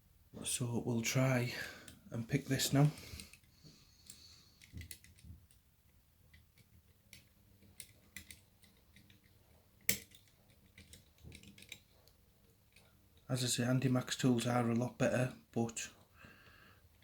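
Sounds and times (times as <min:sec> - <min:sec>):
lock pick clicking in lock: 0:06.3 - 0:11.9.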